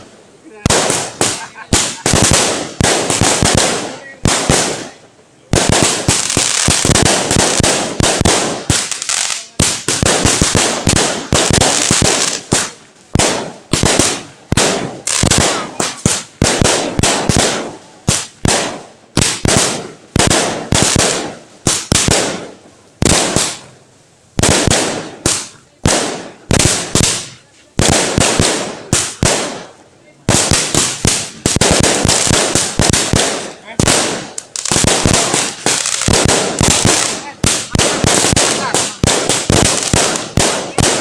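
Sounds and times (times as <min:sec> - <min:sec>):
fireworks crackling bangs: 0:00.0 - 0:41.0.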